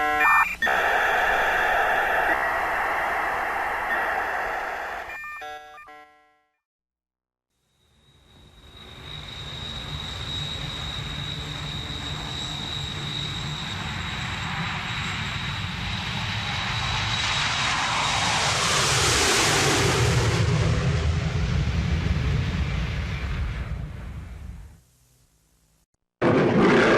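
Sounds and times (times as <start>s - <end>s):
aircraft high whine: 0.0s - 5.2s, 7.6s - 24.8s
aircraft low rumble: 8.3s - 25.2s.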